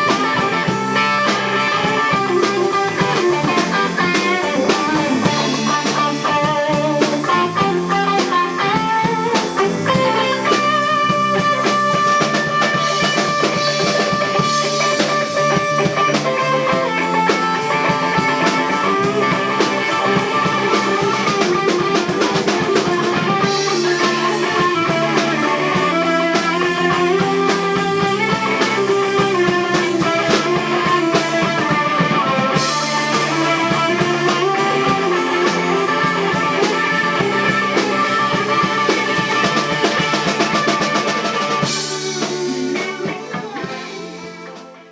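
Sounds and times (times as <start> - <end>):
overdriven electric guitar solo: 0.0 - 44.9
rock band with drums: 0.0 - 44.9.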